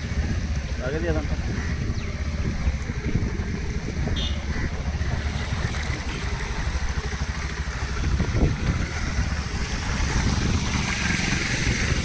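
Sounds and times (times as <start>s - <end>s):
motorcycle running: 0.0s - 12.0s
wind buffeting microphone: 0.0s - 12.0s
water sloshing: 5.0s - 12.0s.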